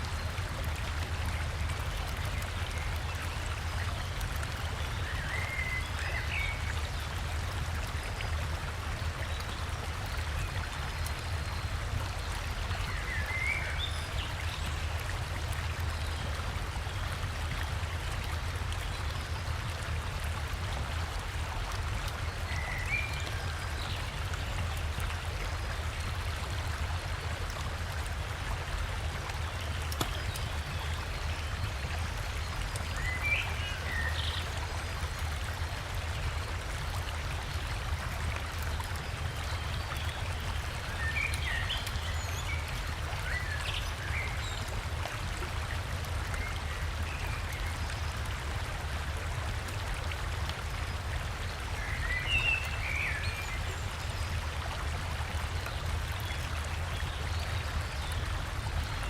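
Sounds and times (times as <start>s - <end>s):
river water flowing: 0.0s - 59.0s.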